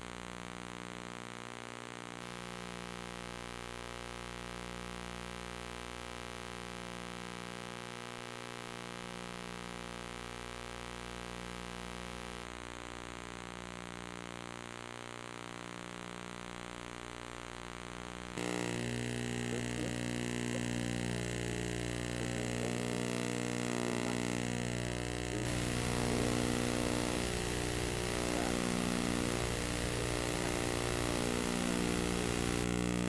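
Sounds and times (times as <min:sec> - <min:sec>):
electrical buzz: 0:18.4 - 0:33.0
hiss: 0:25.4 - 0:33.0.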